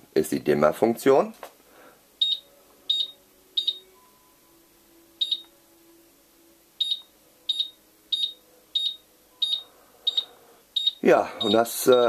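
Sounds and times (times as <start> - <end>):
short high beeps: 6.8 - 12.0.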